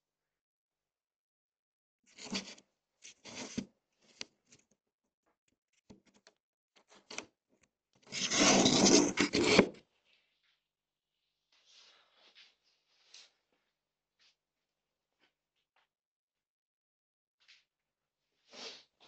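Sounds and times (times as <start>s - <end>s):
rubbing and scraping: 8.1s - 9.8s.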